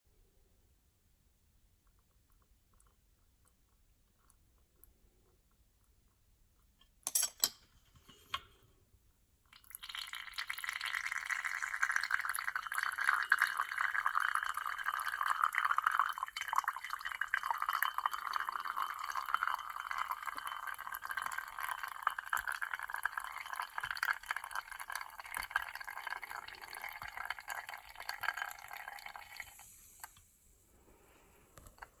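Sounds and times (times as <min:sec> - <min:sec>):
espresso dripping into cup: 0:09.6 - 0:29.5.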